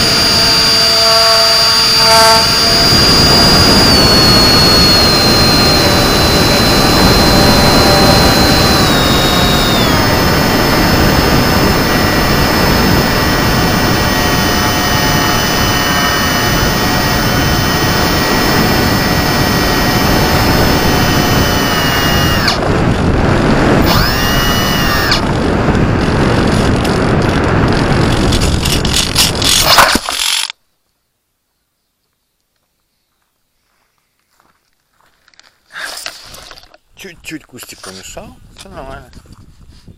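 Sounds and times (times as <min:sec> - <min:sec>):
wind rush: 0:00.0 - 0:30.5, 0:38.0 - 0:39.9
electric motor and propeller whining: 0:00.0 - 0:30.6.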